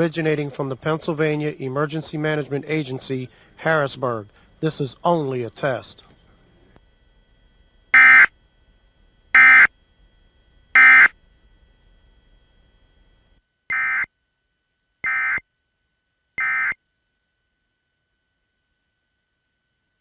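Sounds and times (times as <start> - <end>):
two-tone digital data bursts: 8.0 - 8.3, 9.4 - 9.7, 10.8 - 11.1, 13.7 - 14.1, 15.0 - 15.4, 16.4 - 16.8.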